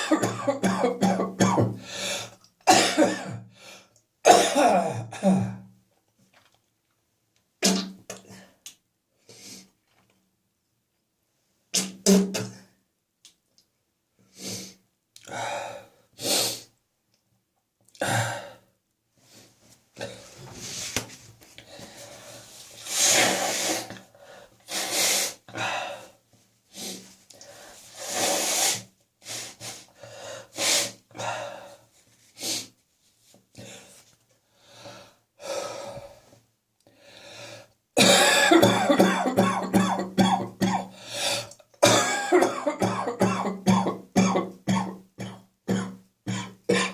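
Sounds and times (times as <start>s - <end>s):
person coughing: 0.0s - 1.8s, 2.7s - 3.4s, 4.3s - 5.6s, 38.0s - 41.0s, 41.8s - 46.9s
loud breathing: 21.6s - 32.7s, 40.9s - 41.6s.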